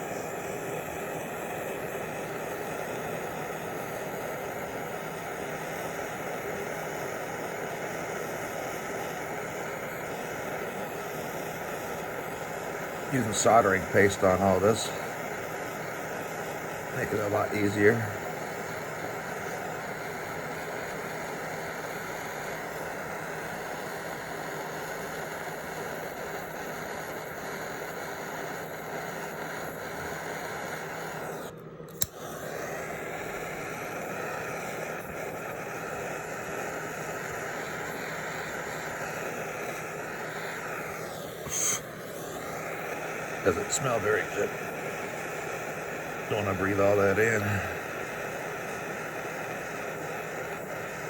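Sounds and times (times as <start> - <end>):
torch flame hissing: 0.0 - 51.0
sharp click: 31.9 - 32.2.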